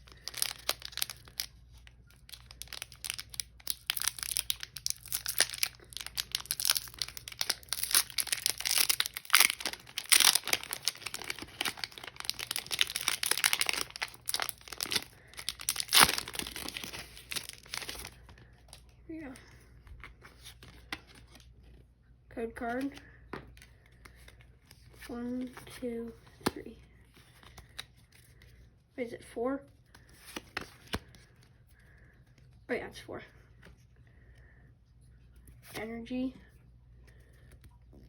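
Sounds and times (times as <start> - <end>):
foil wrapper crinkling and tearing: 0.0 - 18.8.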